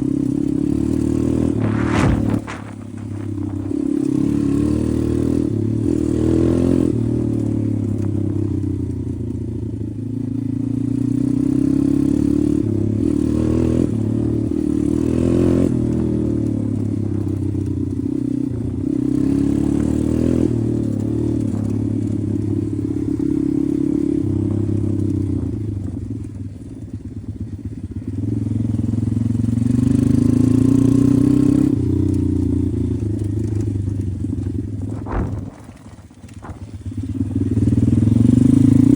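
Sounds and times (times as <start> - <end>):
pit bike engine revving: 0.0 - 7.4, 33.2 - 38.9.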